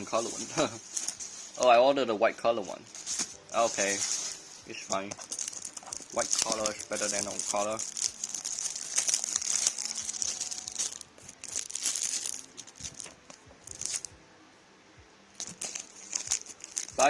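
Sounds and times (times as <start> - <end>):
packaging crinkling and rustling: 0.0 - 14.1, 15.4 - 17.0.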